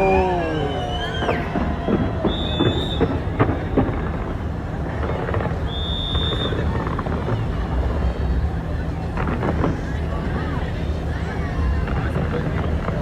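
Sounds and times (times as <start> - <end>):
high whistle tones: 0.0 - 3.2
crowd voices and shouts: 0.0 - 13.0
firework bangs: 0.0 - 13.0.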